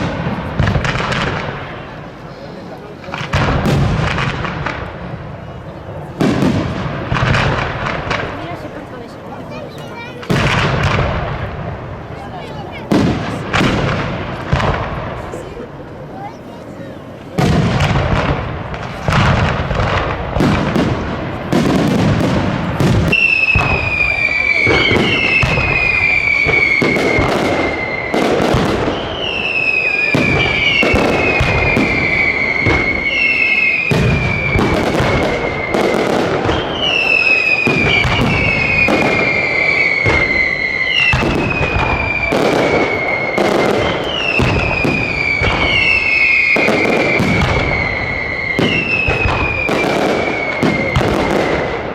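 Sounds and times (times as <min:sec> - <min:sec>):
fireworks bangs and crackling: 0:00.0 - 0:51.9
fireworks falling whistles: 0:17.4 - 0:51.9.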